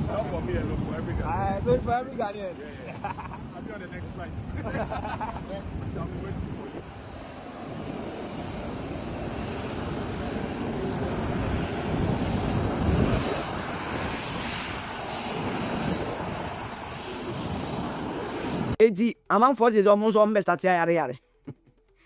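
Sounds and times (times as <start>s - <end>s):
jet engines roaring: 2.6s - 18.8s.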